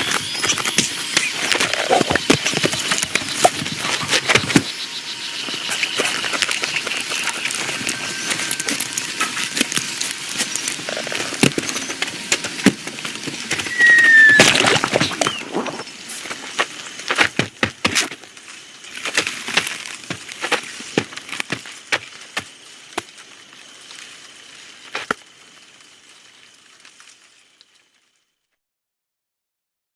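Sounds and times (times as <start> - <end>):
hiss: 0.0 - 27.9
sharp cracks and snaps: 14.4 - 25.4.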